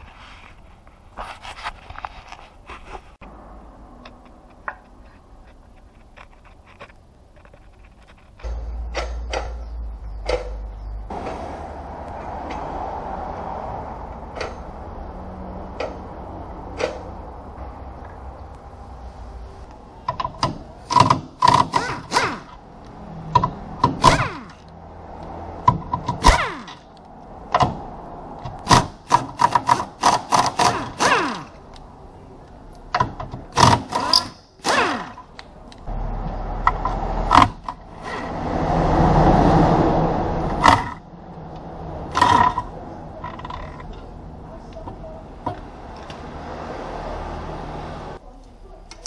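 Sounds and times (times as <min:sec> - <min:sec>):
metal tools clanking: 0:04.8 - 0:11.4, 0:14.3 - 0:14.8, 0:42.1 - 0:44.2.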